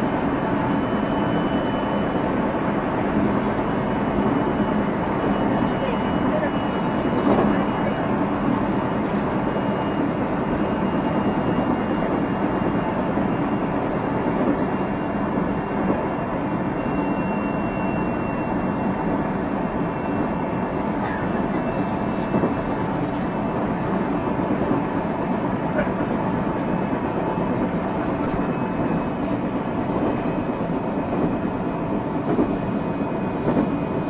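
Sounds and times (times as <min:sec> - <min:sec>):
train wheels rumbling on rails: 0:00.0 - 0:34.0.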